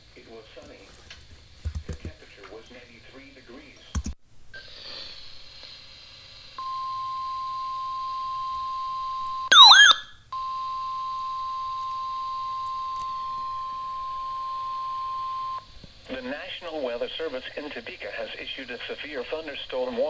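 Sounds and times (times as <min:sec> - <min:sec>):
steady loud alarm beep: 0:09.5 - 0:12.3.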